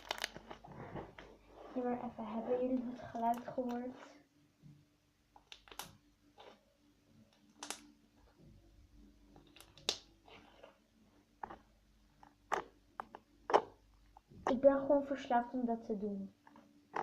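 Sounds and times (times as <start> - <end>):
slime being squished: 12.5 - 14.7.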